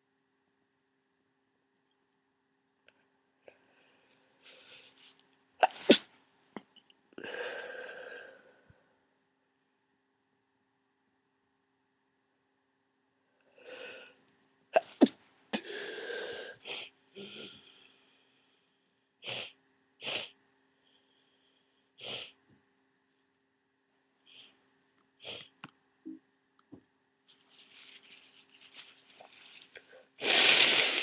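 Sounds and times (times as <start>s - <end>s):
person sneezing: 5.6s - 6.1s, 30.2s - 31.0s
person sniffing: 5.6s - 6.1s, 14.8s - 17.8s, 19.2s - 20.4s, 22.0s - 22.4s, 25.2s - 25.6s, 29.2s - 31.0s.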